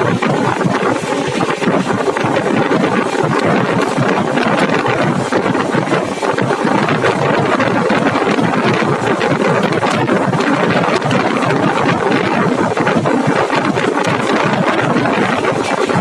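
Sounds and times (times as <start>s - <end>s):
train wheels on rails: 0.0s - 9.1s.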